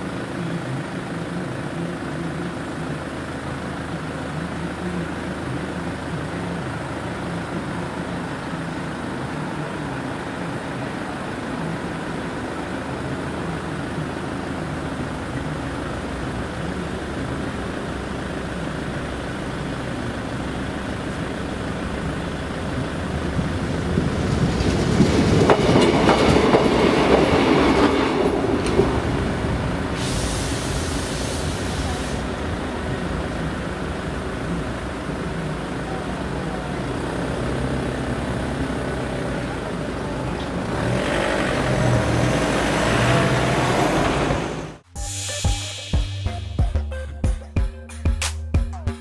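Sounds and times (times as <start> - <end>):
background rumble: 0.0 - 40.7
high-pitched train noise: 19.2 - 46.9
train wheels clattering over rails: 23.1 - 32.4.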